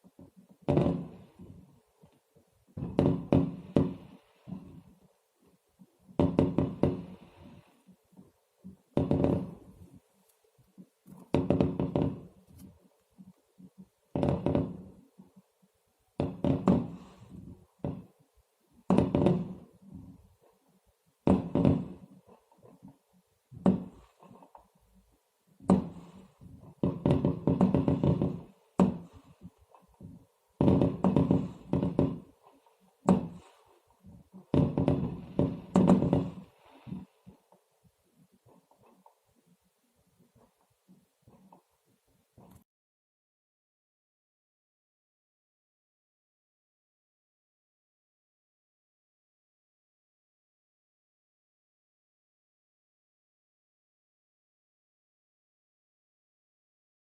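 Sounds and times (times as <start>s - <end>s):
fireworks bangs with echo: 0.6s - 1.6s, 2.8s - 4.7s, 6.1s - 7.4s, 8.9s - 9.8s, 11.3s - 12.4s, 14.1s - 14.9s, 16.2s - 18.1s, 18.9s - 19.7s, 21.2s - 22.2s, 25.6s - 29.8s, 30.6s - 37.2s.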